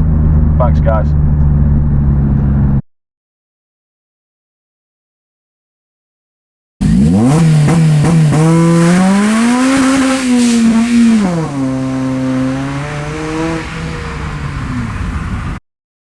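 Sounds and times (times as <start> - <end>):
car engine revving and accelerating: 6.8 - 15.6.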